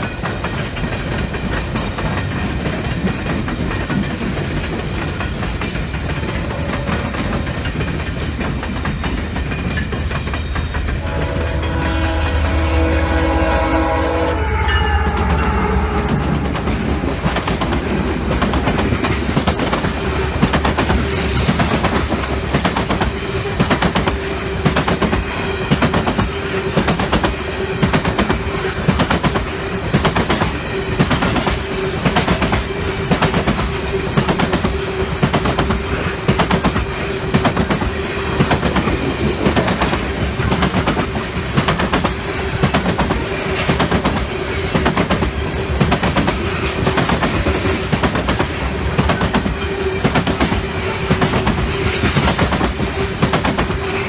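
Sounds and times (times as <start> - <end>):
train wheels clickety-clack: 0.0 - 54.0
steady tone: 11.0 - 18.4.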